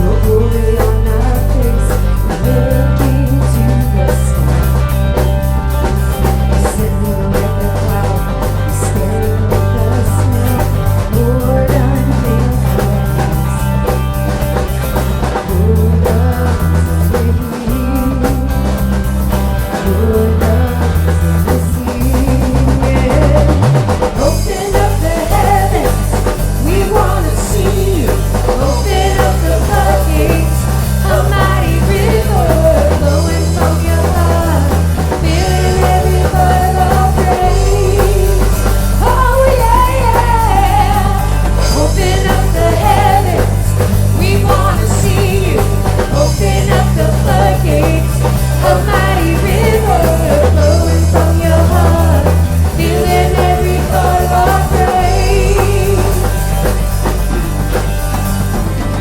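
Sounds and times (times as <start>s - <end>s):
person singing: 0.0s - 57.8s
bass guitar: 0.0s - 59.0s
drum kit: 0.0s - 59.0s
electric guitar: 0.0s - 59.0s.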